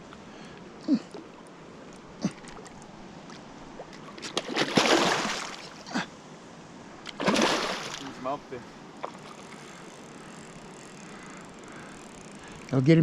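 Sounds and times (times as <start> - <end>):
water splashing: 2.2 - 5.8, 7.0 - 8.4.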